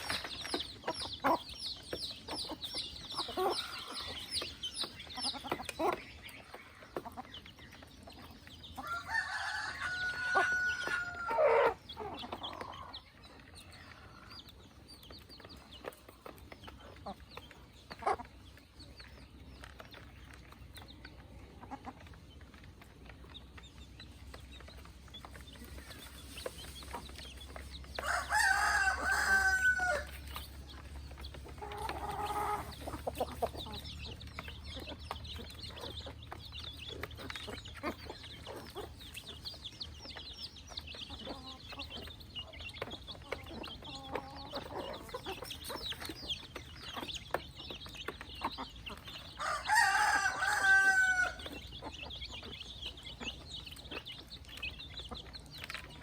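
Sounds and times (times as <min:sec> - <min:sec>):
chickens clucking: 0:00.0 - 0:56.0
rooster crowing: 0:08.8 - 0:11.5, 0:28.0 - 0:30.2, 0:49.4 - 0:51.4.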